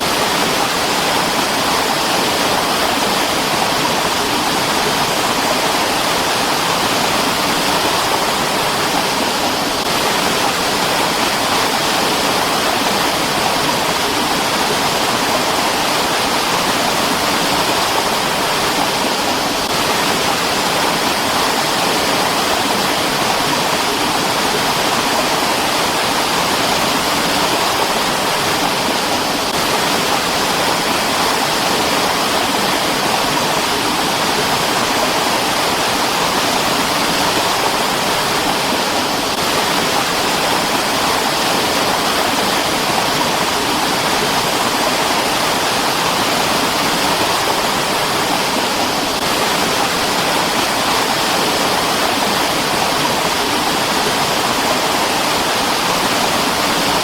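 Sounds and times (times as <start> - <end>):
stream rushing over rocks: 0.0 - 57.0.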